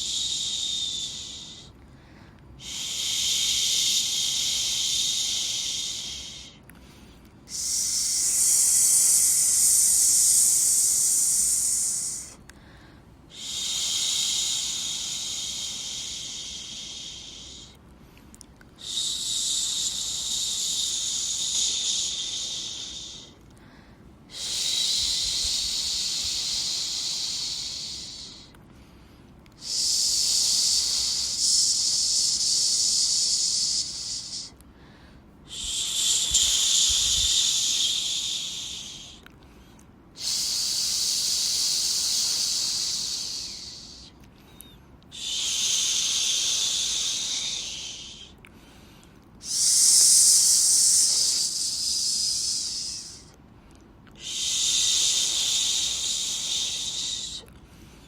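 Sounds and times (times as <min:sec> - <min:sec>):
person shushing: 0:07.5 - 0:12.4, 0:29.6 - 0:34.6, 0:49.4 - 0:53.3.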